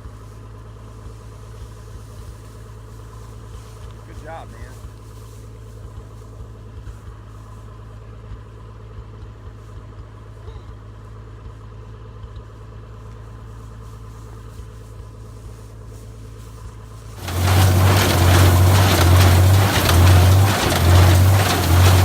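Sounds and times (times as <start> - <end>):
tractor engine running: 17.1 - 22.0.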